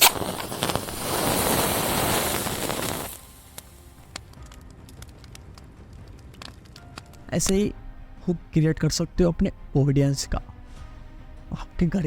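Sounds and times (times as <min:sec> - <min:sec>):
loud hissing rush: 0:00.0 - 0:04.0.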